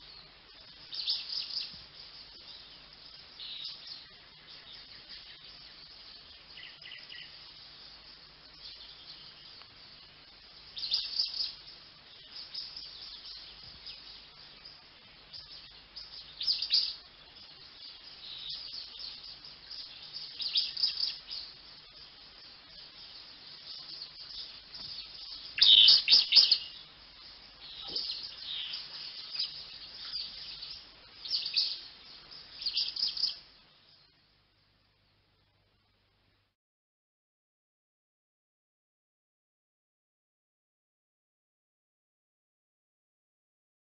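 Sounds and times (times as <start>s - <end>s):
finches twittering: 0.0s - 34.2s.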